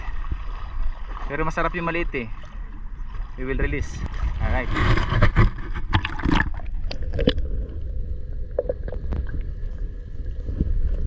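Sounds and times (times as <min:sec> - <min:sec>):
water sloshing: 0:00.0 - 0:11.0
steady low rumble: 0:06.6 - 0:11.0.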